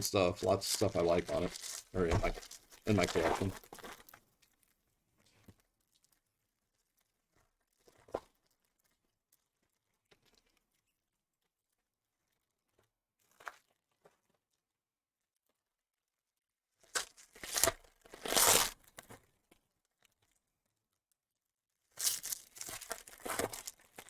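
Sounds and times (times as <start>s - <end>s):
card wrappers crinkling: 0.4s - 4.1s, 22.0s - 24.0s.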